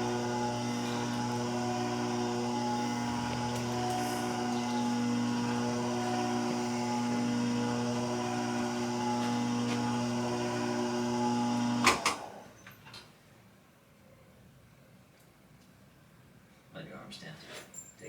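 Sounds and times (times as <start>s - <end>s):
electrical machine hum: 0.0s - 12.4s.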